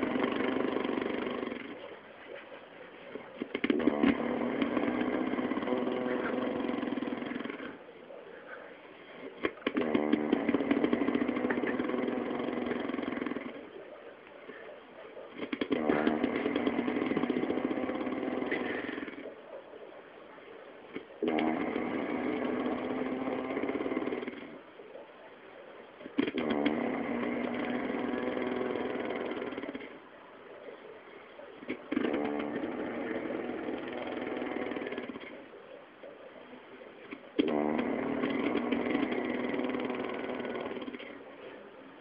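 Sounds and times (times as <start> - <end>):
man snoring with a rattle: 0.0 - 1.8, 3.4 - 7.8, 9.2 - 13.6, 15.4 - 19.3, 21.2 - 24.6, 26.2 - 30.0, 31.9 - 35.4, 37.4 - 41.2
quiet breaths: 0.0 - 42.0.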